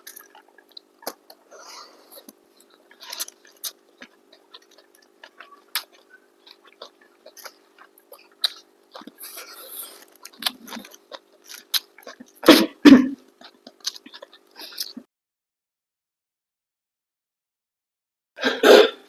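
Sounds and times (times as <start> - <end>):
steady low hum: 0.0 - 15.0
chewing clicks and smacks: 2.2 - 12.5, 13.3 - 15.0.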